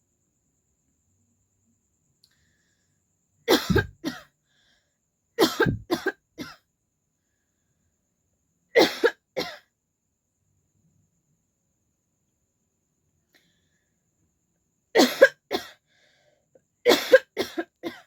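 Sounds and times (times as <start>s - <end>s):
woman coughing: 3.5s - 4.2s, 5.4s - 6.6s, 8.8s - 9.6s, 15.0s - 15.8s, 16.9s - 18.0s.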